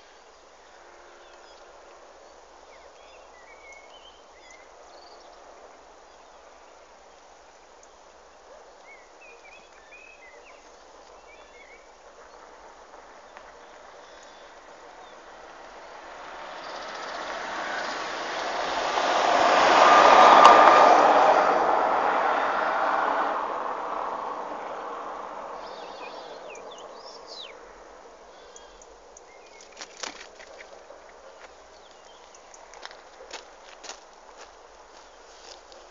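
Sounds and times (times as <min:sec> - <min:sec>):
vehicle passing: 0:14.7 - 0:28.2
bird chirps: 0:25.6 - 0:27.6.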